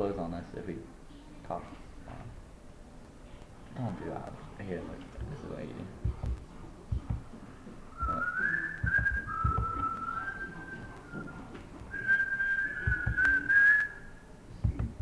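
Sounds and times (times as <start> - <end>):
low knocks and bumps: 6.0 - 7.3, 8.8 - 9.9, 12.8 - 13.4, 14.6 - 15.0
person whistling a tune: 7.9 - 14.1.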